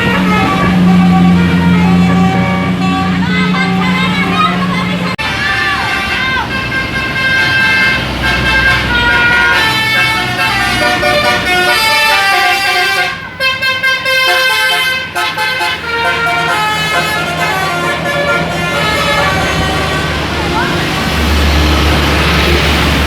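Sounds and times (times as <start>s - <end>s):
bus engine running: 0.0s - 23.0s
multi-tone bus horn melody: 0.0s - 23.0s.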